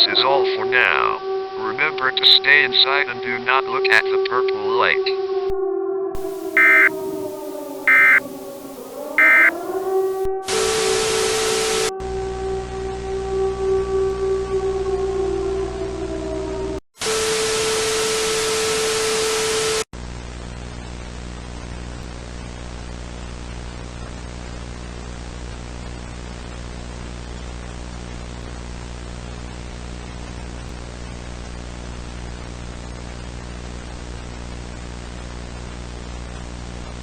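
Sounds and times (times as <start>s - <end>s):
falling tones: 6.2s - 10.3s
broadcast static with tone: 6.2s - 11.9s, 17.0s - 37.0s.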